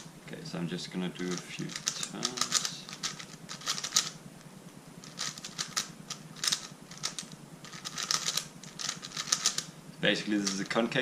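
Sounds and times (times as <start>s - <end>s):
plastic puzzle faces clicking: 1.3s - 4.2s, 5.0s - 9.7s.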